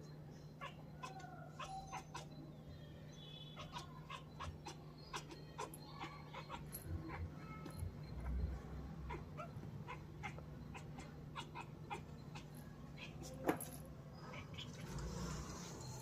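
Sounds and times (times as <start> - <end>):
kitten chattering: 0.6 - 2.4, 3.5 - 13.4.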